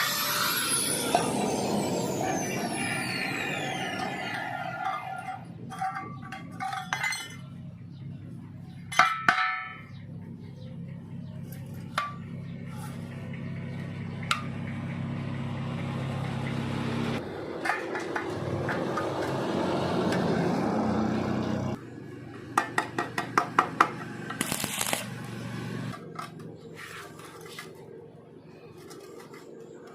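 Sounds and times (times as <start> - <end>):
steel pieces clinking: 4.8 - 7.5.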